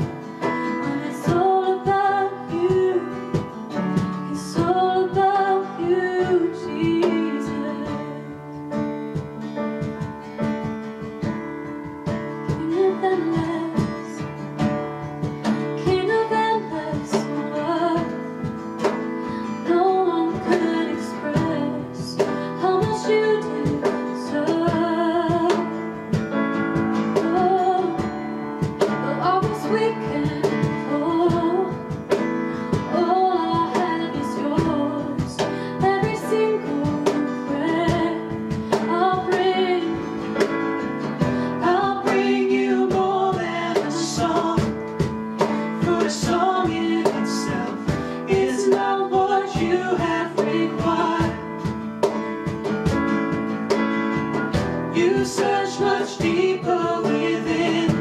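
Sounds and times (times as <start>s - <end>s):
strummed acoustic guitar: 0.0s - 58.0s
person singing worship song: 41.2s - 51.8s, 54.9s - 58.0s.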